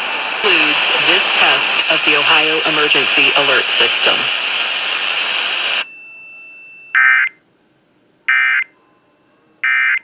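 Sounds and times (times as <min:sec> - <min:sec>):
loud hiss: 0:00.0 - 0:05.8
faint steady whine: 0:00.0 - 0:09.7.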